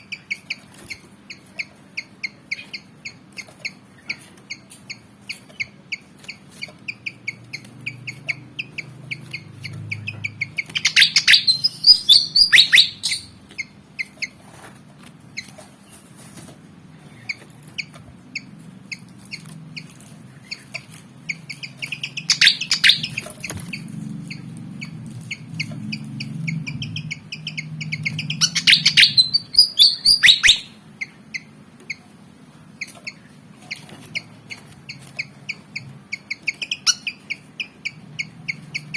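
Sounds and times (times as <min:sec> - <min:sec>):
bird chips: 0:00.0 - 0:16.4, 0:17.1 - 0:32.0, 0:32.8 - 0:38.9
rapid bird song bursts: 0:04.9 - 0:13.7, 0:19.8 - 0:31.5.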